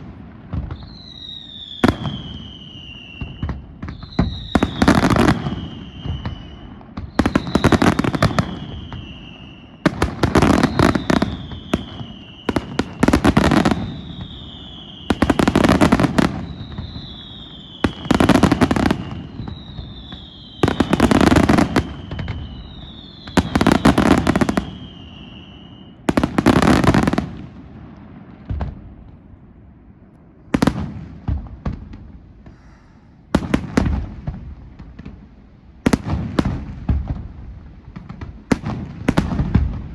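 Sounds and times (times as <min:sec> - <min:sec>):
firework bangs: 0:00.0 - 0:29.3, 0:30.5 - 0:39.9
crackling firework volleys: 0:00.0 - 0:39.9
falling whistle: 0:00.7 - 0:09.8, 0:10.5 - 0:12.8, 0:13.8 - 0:15.6, 0:16.4 - 0:26.0.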